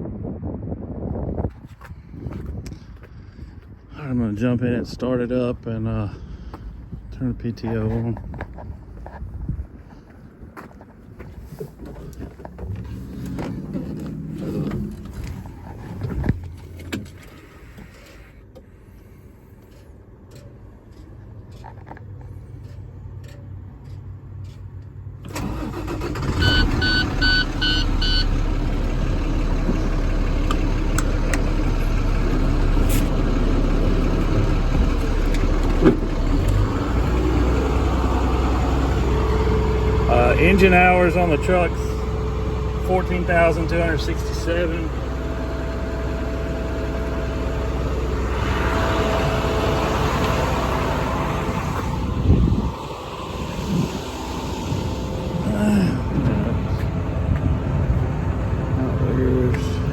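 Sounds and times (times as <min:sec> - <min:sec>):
diesel engine starting and idling: 0:01.3 - 0:59.9
dash warning buzzer beeps: 0:26.2 - 0:28.3.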